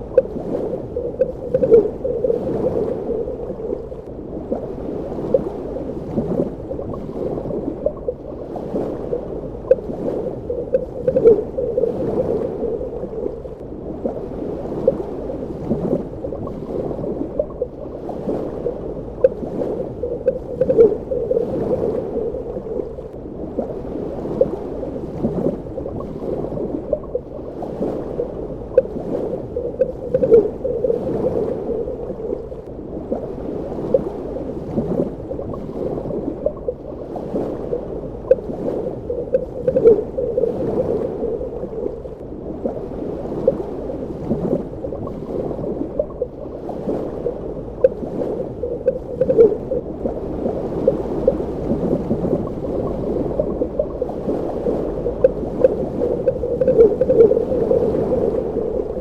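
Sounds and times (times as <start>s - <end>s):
underwater bubbling and gurgling: 0.0s - 59.0s
small pops and blips: 9.7s - 9.9s, 10.6s - 12.2s, 29.6s - 32.4s, 48.7s - 49.8s.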